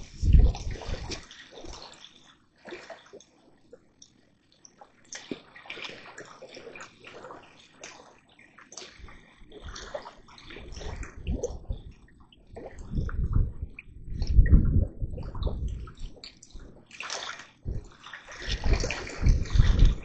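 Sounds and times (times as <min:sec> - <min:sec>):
water splashing and sloshing: 0:00.0 - 0:20.0
low rumbling thumps: 0:12.8 - 0:15.9.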